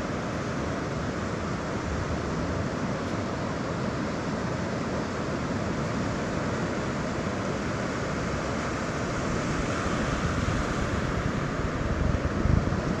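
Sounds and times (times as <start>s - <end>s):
surf washing on beach: 0.0s - 13.0s
wind buffeting microphone: 9.2s - 13.0s.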